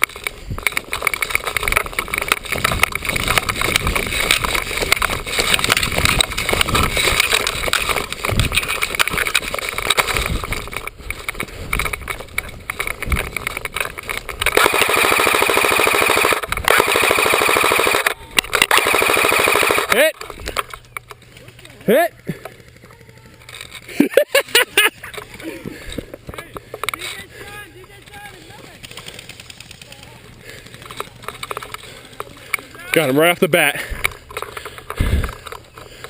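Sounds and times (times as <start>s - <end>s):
rustling and gear rattle: 0.0s - 36.0s
airsoft rifle full-auto fire: 14.4s - 20.2s.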